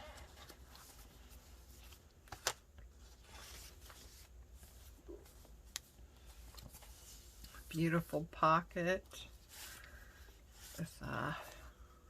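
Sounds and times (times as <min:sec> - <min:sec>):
paper pages rustling: 0:00.1 - 0:07.7.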